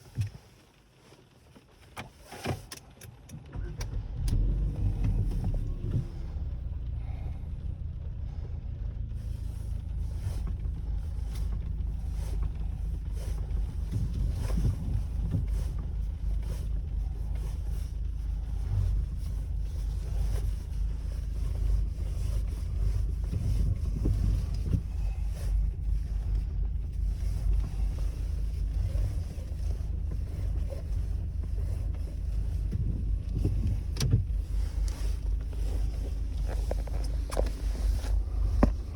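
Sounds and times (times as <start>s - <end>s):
low rumble: 3.6s - 38.9s
power steering knocking: 9.1s - 38.9s.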